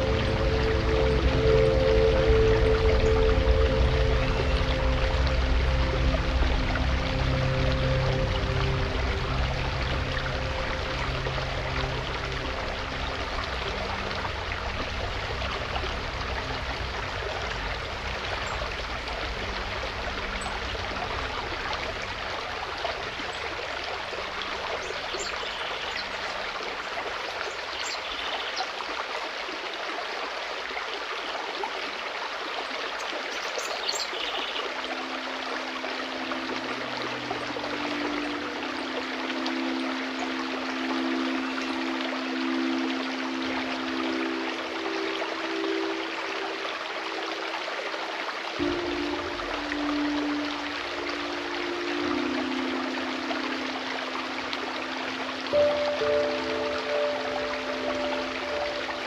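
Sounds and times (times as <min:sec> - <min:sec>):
soft background music: 0:00.0 - 0:59.0
stream flowing: 0:00.0 - 0:59.0.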